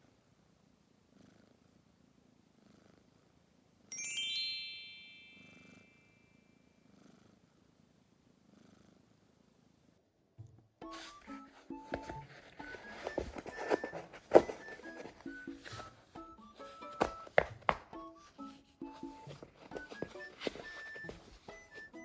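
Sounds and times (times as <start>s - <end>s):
kitten purring: 1.0s - 3.5s, 6.8s - 9.4s
bright chiming ding: 3.9s - 6.3s.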